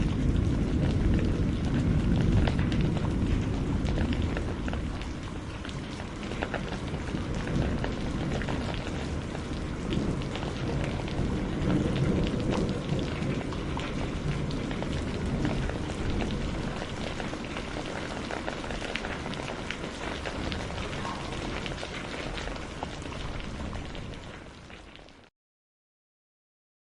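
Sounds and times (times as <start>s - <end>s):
low rumble of thunder: 0.0s - 25.0s
steady rain patter: 0.0s - 25.3s.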